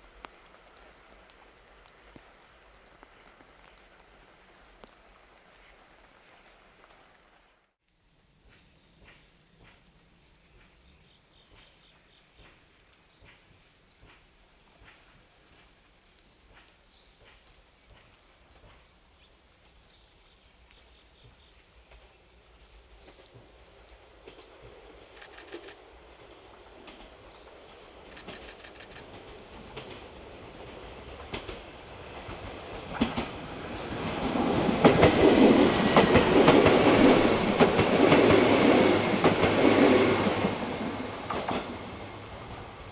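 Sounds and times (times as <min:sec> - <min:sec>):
electric train passing: 0:23.4 - 0:42.9.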